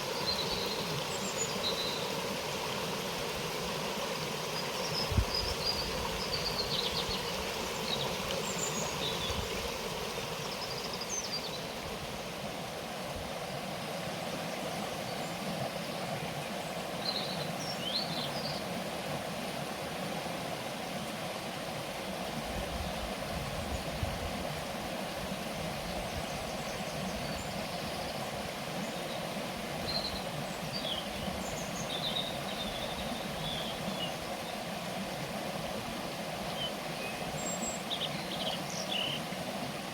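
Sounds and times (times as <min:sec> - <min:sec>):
birds chirping: 0:04.5 - 0:11.7.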